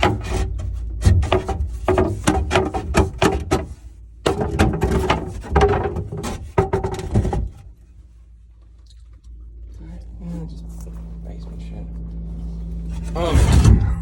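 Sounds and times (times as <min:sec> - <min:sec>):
objects clattering and knocking: 0:00.0 - 0:08.1.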